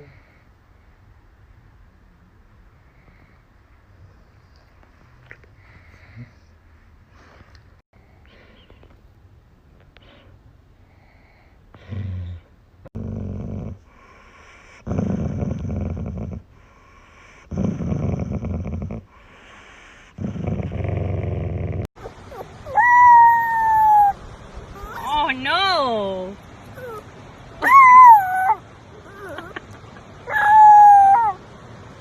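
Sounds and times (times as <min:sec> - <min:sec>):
dog making throaty sounds: 0:17.3 - 0:23.0.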